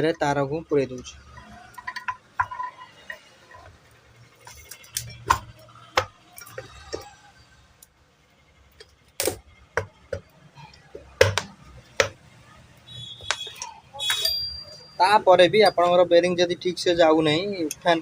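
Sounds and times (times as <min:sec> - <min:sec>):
metal parts and tools clinking: 0:01.0 - 0:07.2, 0:13.3 - 0:15.0.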